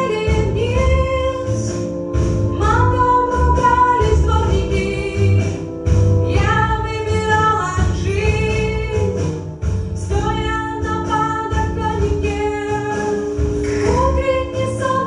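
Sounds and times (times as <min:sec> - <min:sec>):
woman singing: 0:00.0 - 0:01.8, 0:02.6 - 0:09.2, 0:10.0 - 0:15.0
instrumental accompaniment: 0:00.0 - 0:15.0.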